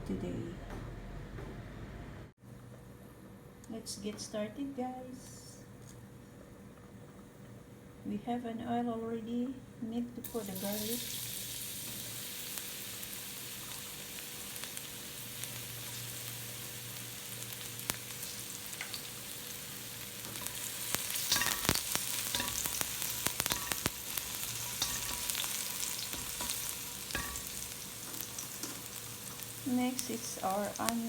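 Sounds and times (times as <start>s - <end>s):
garlic sizzling in oil: 10.2s - 31.0s.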